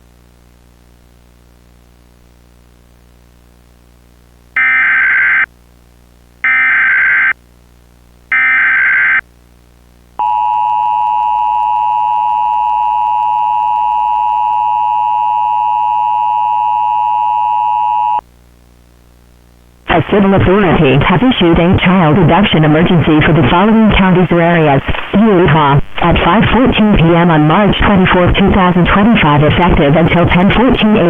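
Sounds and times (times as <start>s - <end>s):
faint low hum: 0.0s - 31.0s
screeching data bursts: 4.6s - 5.5s, 6.5s - 7.3s, 8.3s - 9.2s
two-tone attention signal: 4.6s - 5.5s, 6.5s - 7.3s, 8.3s - 9.2s.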